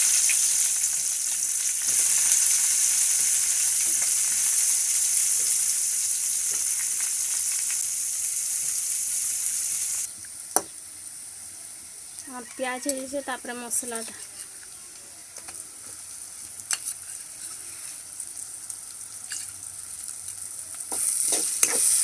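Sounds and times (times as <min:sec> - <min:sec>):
onions sizzling in hot oil: 0:00.0 - 0:22.0
stirring in a pan: 0:20.9 - 0:22.0.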